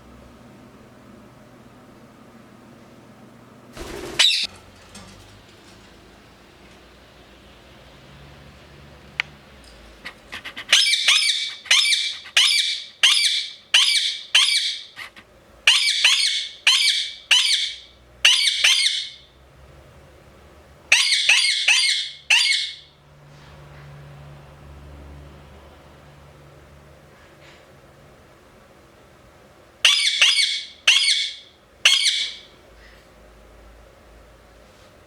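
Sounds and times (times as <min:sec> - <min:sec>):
parakeet screeching: 0:04.0 - 0:04.5, 0:10.1 - 0:19.3, 0:20.9 - 0:22.9, 0:29.8 - 0:32.5.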